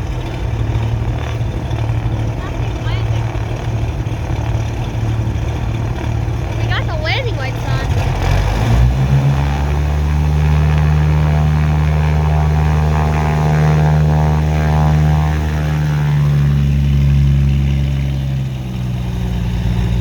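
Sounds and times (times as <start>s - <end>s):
propeller plane engine drone: 0.0s - 20.0s.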